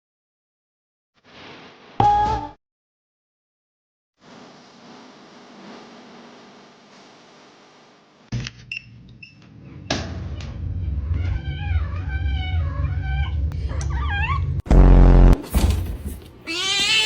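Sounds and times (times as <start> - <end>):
low rumble: 9.6 - 15.4
cat meowing: 16.4 - 17.0.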